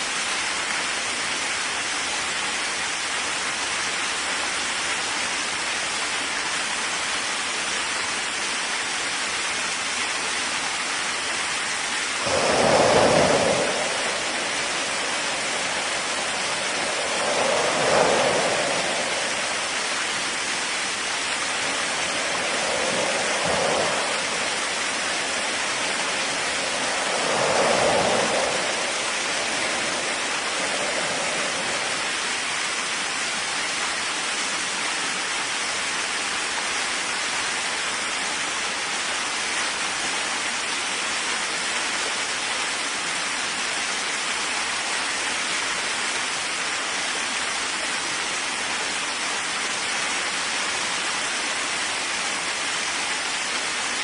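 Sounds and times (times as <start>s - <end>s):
steady rain: 0.0s - 54.0s
thunder rolling: 12.2s - 33.0s.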